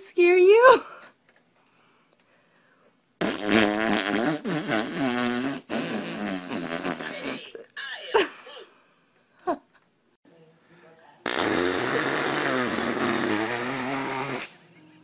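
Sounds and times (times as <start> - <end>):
fart noise: 3.2 - 7.6, 11.2 - 14.5.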